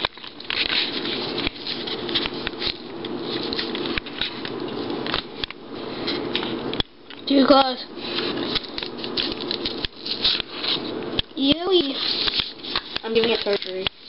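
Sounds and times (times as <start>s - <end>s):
camera handling rustling: 0.0s - 6.8s, 8.1s - 11.0s.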